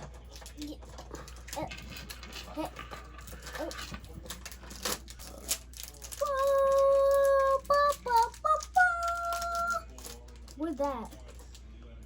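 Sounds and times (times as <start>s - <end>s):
plastic packaging rattling: 0.0s - 11.6s
child singing: 6.2s - 9.9s.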